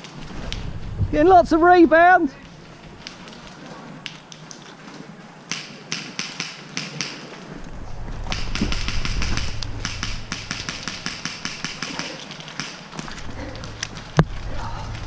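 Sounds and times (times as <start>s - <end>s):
low rumble: 0.1s - 3.6s, 7.6s - 12.0s, 13.0s - 15.0s
airsoft gunshots: 8.2s - 13.8s.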